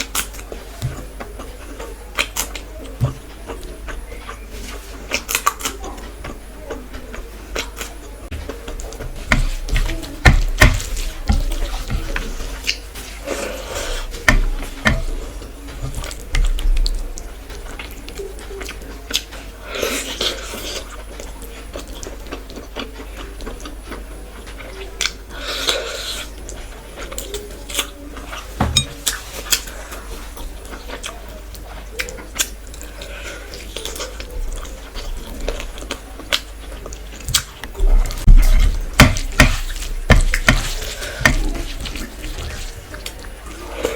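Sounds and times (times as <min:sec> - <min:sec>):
chewing and mouth noises: 0:00.0 - 0:43.9.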